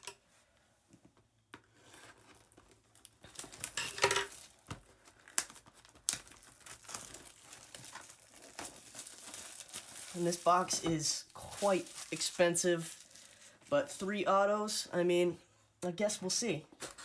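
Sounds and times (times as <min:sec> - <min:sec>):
plastic wrap crinkling: 0:02.0 - 0:14.0.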